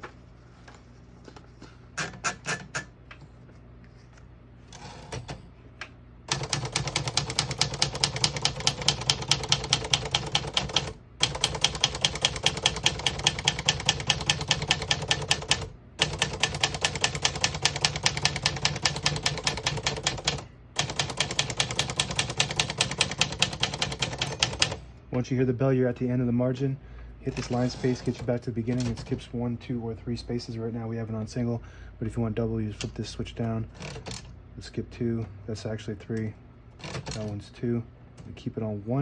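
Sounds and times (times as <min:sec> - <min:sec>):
typewriter keystrokes: 0:06.3 - 0:24.8.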